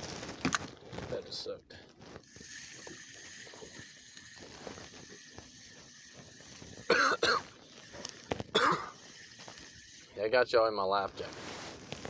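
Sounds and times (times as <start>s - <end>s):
man clearing his throat: 6.9s - 7.5s, 8.5s - 9.0s.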